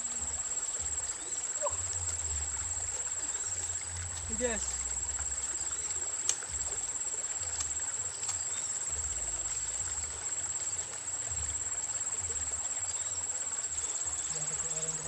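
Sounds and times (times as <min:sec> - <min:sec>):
insects trilling: 0:00.0 - 0:15.0.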